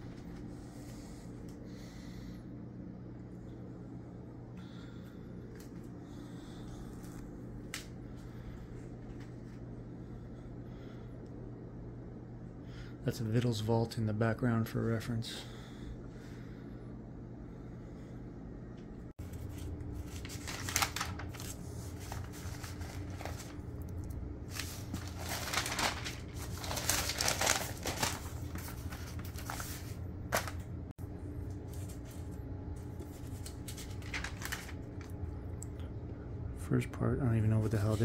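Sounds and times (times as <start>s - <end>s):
steady low hum: 0.0s - 38.0s
packaging rustling and tearing: 19.3s - 23.6s, 24.5s - 30.6s, 31.7s - 35.1s.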